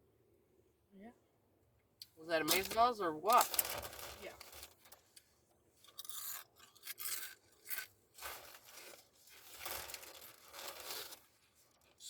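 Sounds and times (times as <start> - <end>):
person eating crunchy food: 5.9 - 8.9.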